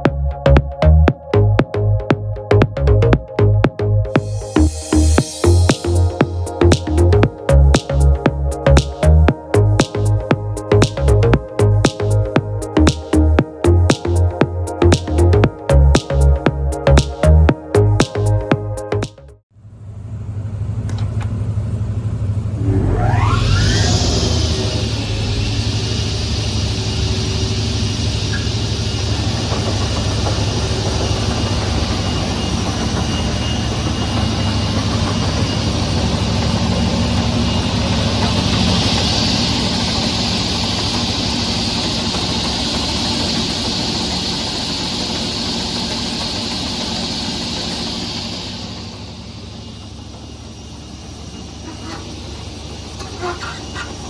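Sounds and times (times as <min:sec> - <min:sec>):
thin steady whine: 0:04.1 - 0:15.4, 0:19.7 - 0:54.0
saw motor low hum: 0:04.1 - 0:15.8, 0:22.2 - 0:54.0
saw blades hissing: 0:04.2 - 0:11.2.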